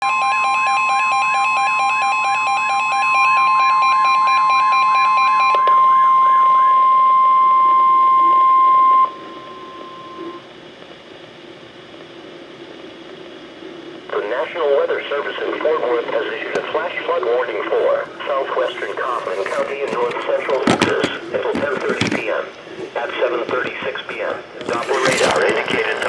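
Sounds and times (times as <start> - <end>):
warbling beeping alarm: 0.0 - 10.4
faint radio hiss and hum: 9.3 - 26.0.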